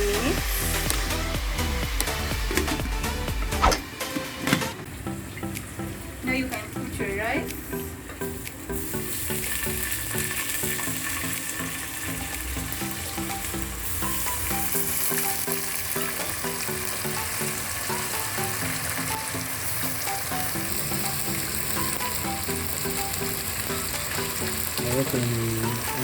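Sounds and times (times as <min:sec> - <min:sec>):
background music: 0:00.0 - 0:26.0
rice sizzling in hot oil: 0:08.3 - 0:26.0.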